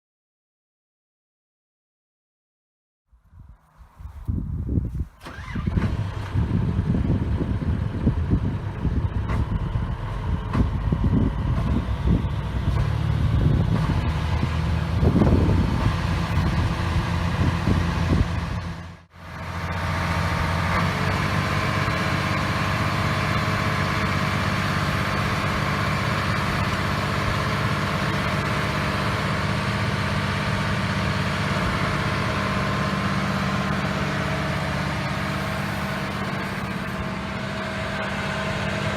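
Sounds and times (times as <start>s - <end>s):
diesel engine running: 5.2s - 38.9s
engine knocking: 5.3s - 38.9s.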